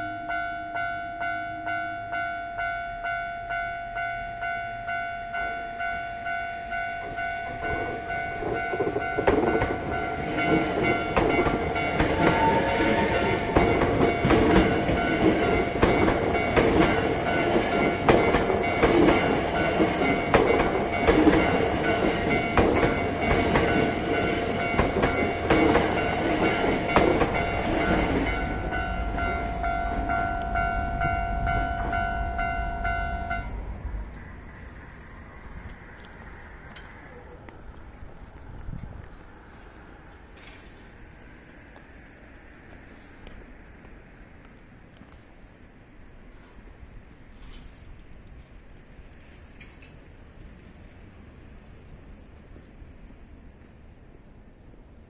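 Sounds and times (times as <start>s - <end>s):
level-crossing warning bell ringing: 0.0s - 33.9s
train wheels clicking over rail joints: 6.7s - 33.0s, 34.0s - 55.0s.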